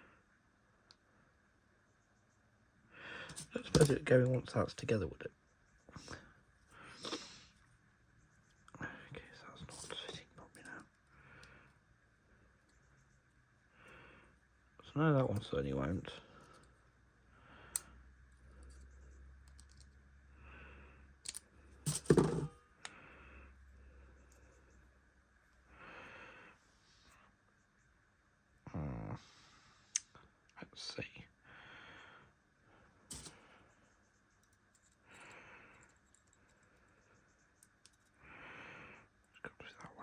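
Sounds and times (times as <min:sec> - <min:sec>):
light clicks of parts handled: 0:03.3 - 0:04.4, 0:21.2 - 0:23.0, 0:33.1 - 0:33.4, 0:37.5 - 0:38.2
knock of parts: 0:21.9 - 0:22.6.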